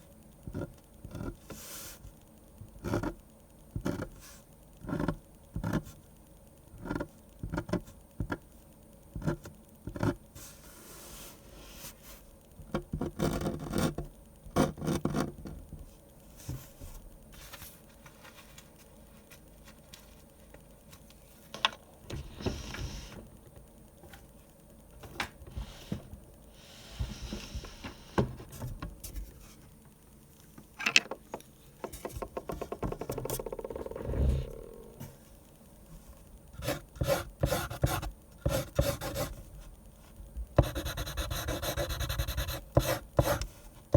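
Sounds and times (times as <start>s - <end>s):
drawing tool scratching on paper: 36.6s - 39.4s, 40.6s - 43.5s.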